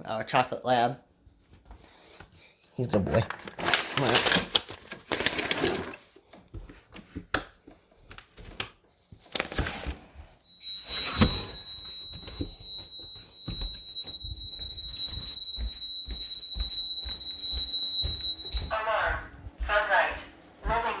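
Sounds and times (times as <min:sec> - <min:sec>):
alarm high-pitched tone: 0:10.5 - 0:19.3.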